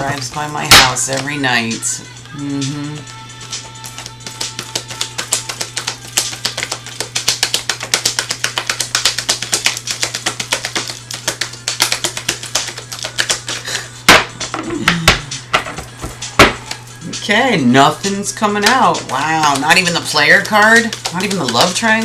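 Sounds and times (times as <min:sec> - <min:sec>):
background music: 0:00.0 - 0:07.2, 0:10.8 - 0:22.0
cards being shuffled: 0:03.5 - 0:13.9, 0:18.6 - 0:22.0.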